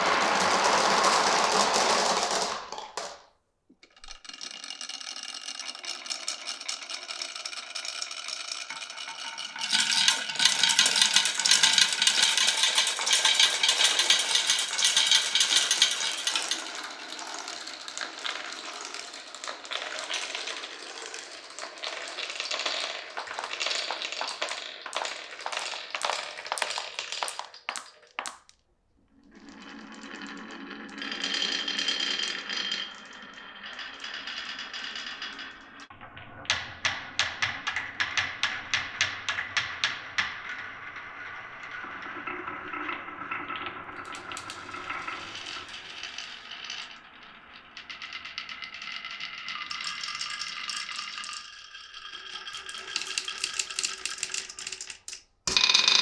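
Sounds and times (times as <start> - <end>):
marbles rolling on wooden track: 0.0 - 56.0
marbles clicking together: 3.8 - 28.6, 44.0 - 47.0, 47.8 - 56.0.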